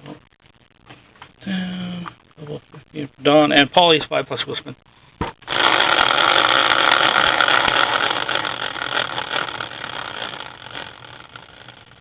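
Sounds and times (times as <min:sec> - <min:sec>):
prize wheel clicking: 0:05.5 - 0:12.0.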